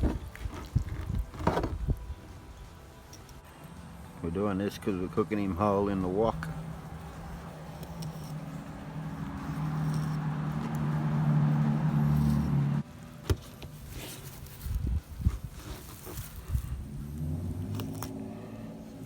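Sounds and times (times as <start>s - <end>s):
low motor hum: 5.4s - 13.1s, 16.2s - 19.0s.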